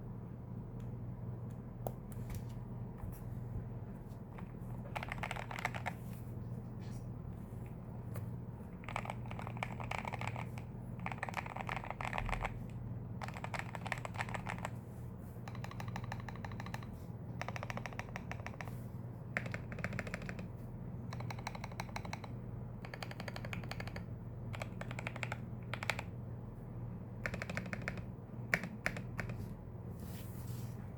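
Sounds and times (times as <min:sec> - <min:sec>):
typing on mechanical keyboard: 0:04.3 - 0:06.0, 0:08.7 - 0:14.8, 0:15.4 - 0:18.8, 0:19.4 - 0:26.2, 0:27.2 - 0:29.4.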